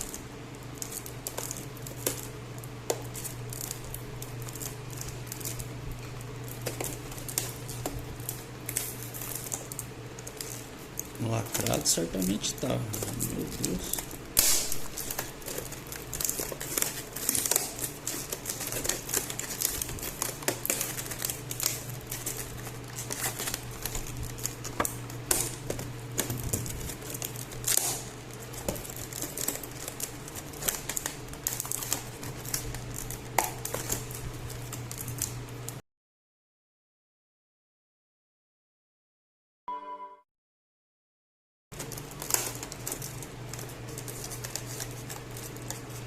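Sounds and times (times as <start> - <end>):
cardboard packaging crinkling: 0.0 - 35.8, 41.8 - 46.0
steady low hum: 0.0 - 35.8.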